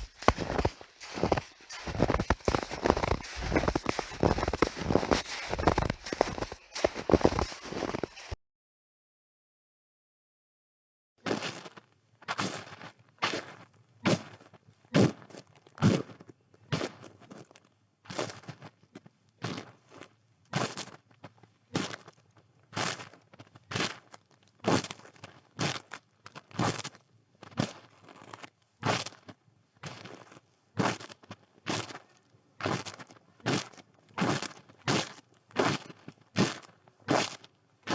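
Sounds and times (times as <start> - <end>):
footsteps crunching through snow: 0.0 - 8.4.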